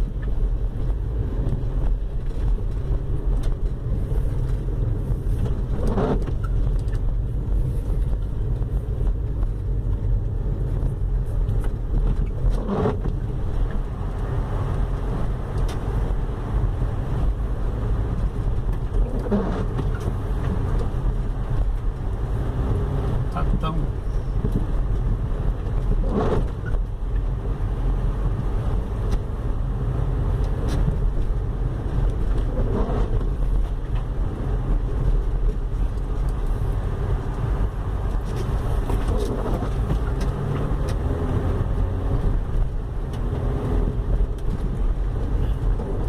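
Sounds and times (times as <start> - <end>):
car road and drivetrain rumble: 0.0 - 46.0.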